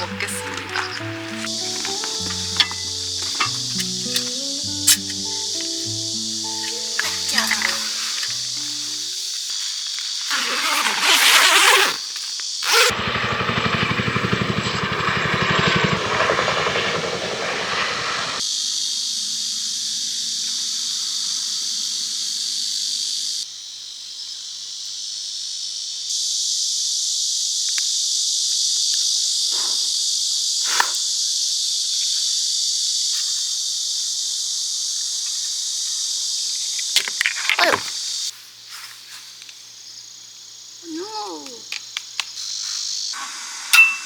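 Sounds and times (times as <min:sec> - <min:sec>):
rumbling hiss: 0:00.0 - 0:12.1, 0:12.8 - 0:18.4
insects chirping: 0:00.0 - 0:44.0.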